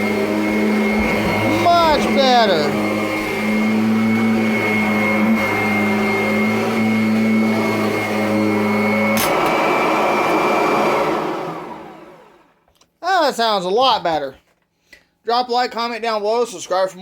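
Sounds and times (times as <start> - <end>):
upright vacuum running: 0.0 - 12.5.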